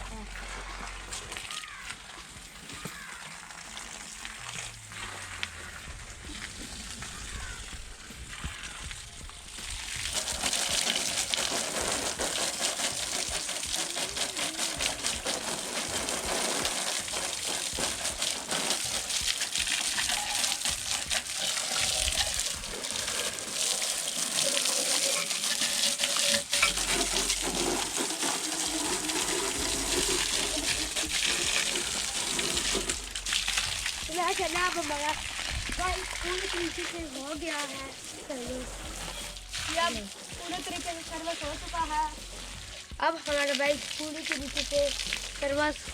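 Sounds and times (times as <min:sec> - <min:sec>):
pressure washer jet hissing: 0:09.4 - 0:35.1.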